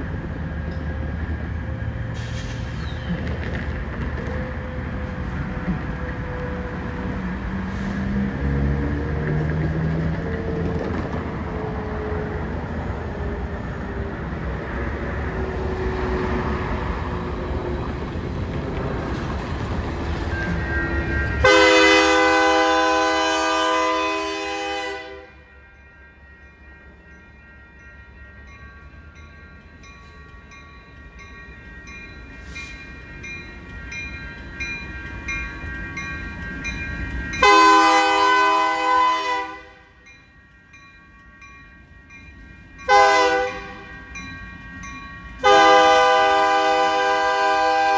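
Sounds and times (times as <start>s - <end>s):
freight locomotive rumbling: 0.0s - 47.9s
train air horn blasts: 21.4s - 25.4s, 37.4s - 39.9s, 42.9s - 43.9s, 45.4s - 47.9s
crossing bell dings: 25.1s - 47.2s.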